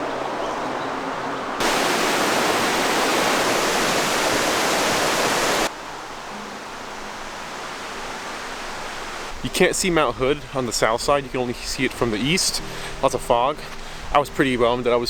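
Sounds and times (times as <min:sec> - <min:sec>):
waterfall rushing roar: 0:00.0 - 0:09.4.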